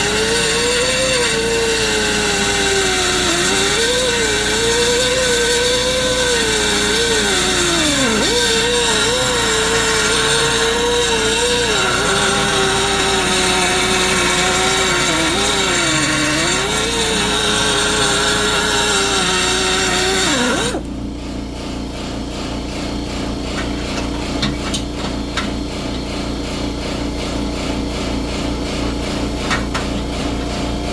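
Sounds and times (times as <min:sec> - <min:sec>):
rotary tool grinding steel: 0:00.0 - 0:20.9.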